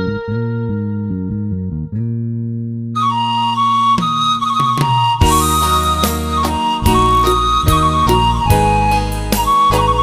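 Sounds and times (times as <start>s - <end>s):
flute-like melody: 3.0s - 10.0s
bass line and beat: 4.7s - 10.0s.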